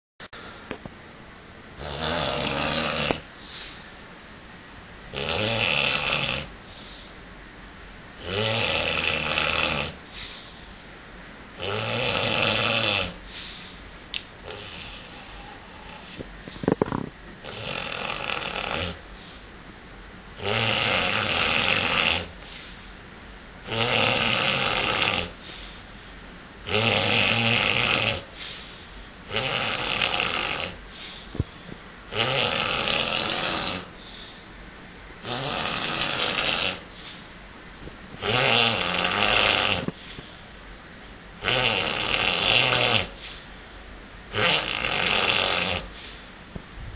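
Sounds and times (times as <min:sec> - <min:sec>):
man snoring: 0:01.8 - 0:03.3, 0:05.1 - 0:06.5, 0:08.2 - 0:10.0, 0:11.6 - 0:13.2, 0:14.4 - 0:19.0, 0:20.4 - 0:22.4, 0:23.6 - 0:25.4, 0:26.6 - 0:28.4, 0:29.3 - 0:30.8, 0:32.1 - 0:34.0, 0:35.2 - 0:36.9, 0:38.2 - 0:40.0, 0:41.4 - 0:43.2, 0:44.3 - 0:46.0.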